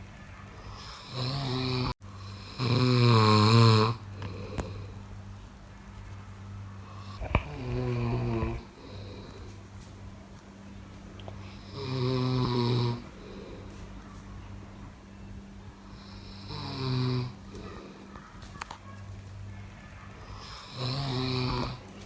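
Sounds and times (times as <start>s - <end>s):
steady low hum: 0.0s - 22.0s
person snoring: 0.7s - 5.0s, 6.9s - 9.6s, 11.4s - 13.7s, 15.9s - 18.0s, 20.4s - 21.9s.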